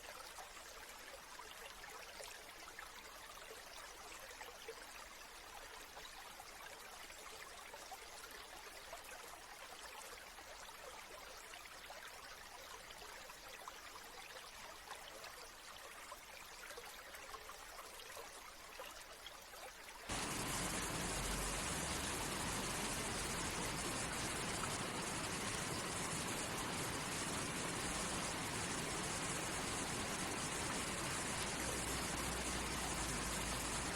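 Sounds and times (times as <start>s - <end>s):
rushing water: 20.1s - 33.9s
water trickling: 20.1s - 33.9s.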